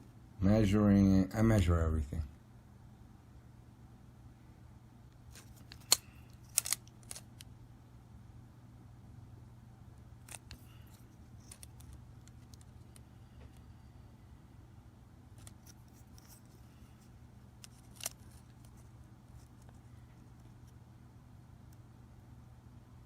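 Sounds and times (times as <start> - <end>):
steady low hum: 0.0 - 23.0
clicks of small hard parts: 5.4 - 7.5.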